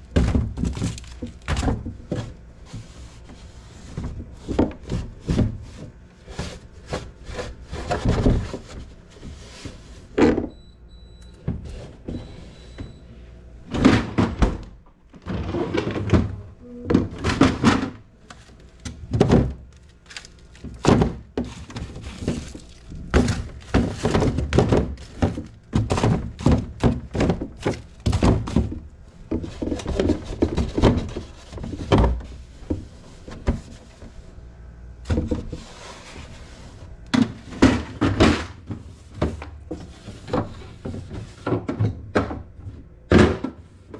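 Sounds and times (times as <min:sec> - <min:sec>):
drawers and doors sliding shut: 0:13.7 - 0:16.4
containers knocking and clattering: 0:18.9 - 0:33.7, 0:37.1 - 0:43.9.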